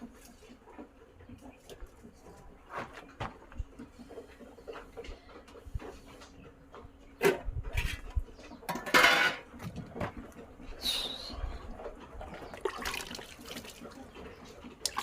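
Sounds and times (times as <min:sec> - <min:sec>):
utensils clattering: 0:08.7 - 0:09.8.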